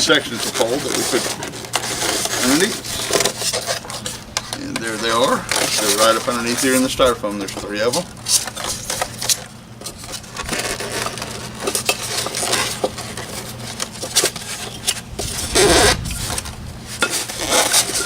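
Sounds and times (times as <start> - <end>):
styrofoam rubbing and crunching: 0.0 - 18.0.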